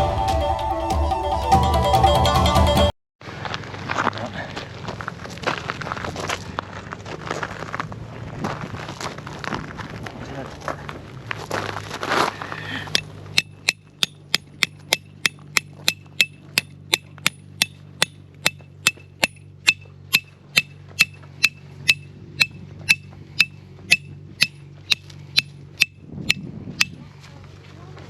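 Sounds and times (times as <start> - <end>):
hammer striking tent pegs: 12.9 - 27.0.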